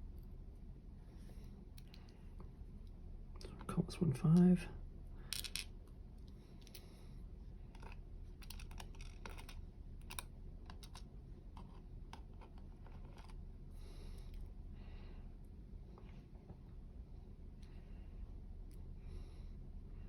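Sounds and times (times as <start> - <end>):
small metal parts clicking: 7.7 - 11.0.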